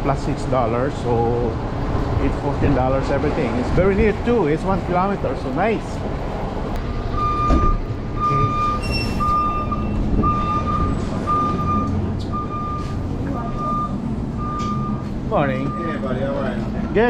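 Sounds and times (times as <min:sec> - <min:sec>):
low engine rumble: 0:00.0 - 0:17.0
reversing alarm beeping: 0:07.1 - 0:16.6.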